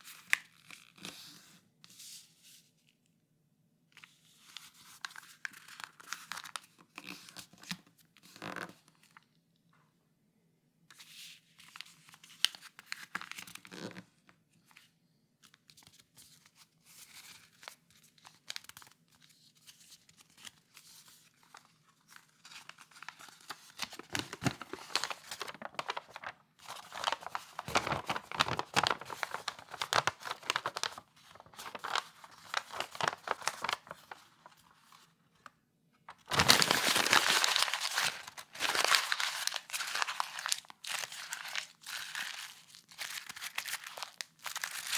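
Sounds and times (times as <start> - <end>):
paper rustling and tearing: 23.7 - 34.6, 36.1 - 42.5.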